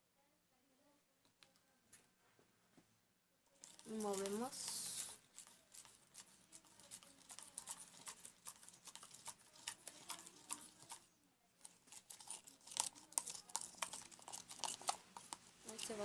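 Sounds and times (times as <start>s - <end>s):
spoon stirring slime: 3.6s - 16.0s.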